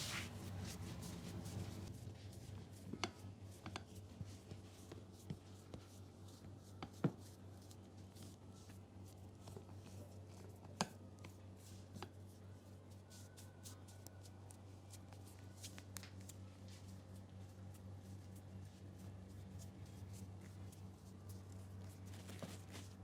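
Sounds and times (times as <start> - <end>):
steady low hum: 0.0 - 2.4.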